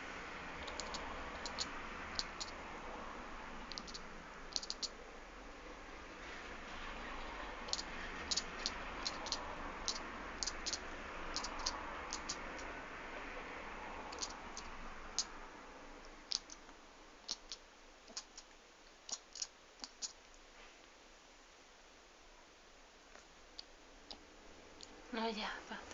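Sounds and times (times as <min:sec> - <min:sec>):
soft hiss: 0:00.0 - 0:25.9
kitten clicking noises: 0:00.6 - 0:02.6, 0:03.7 - 0:05.0, 0:07.6 - 0:12.8, 0:14.1 - 0:15.4, 0:16.0 - 0:20.4.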